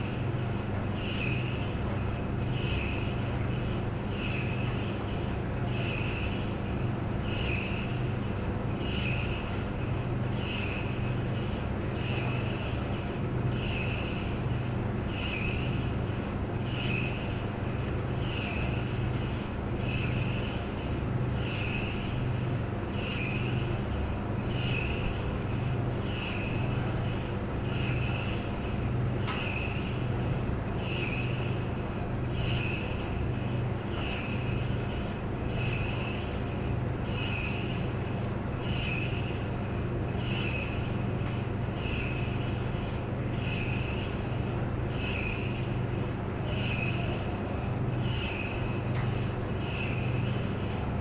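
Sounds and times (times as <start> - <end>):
clothes dryer humming: 0.0 - 51.0
faint ticks: 16.7 - 32.8, 33.6 - 50.9.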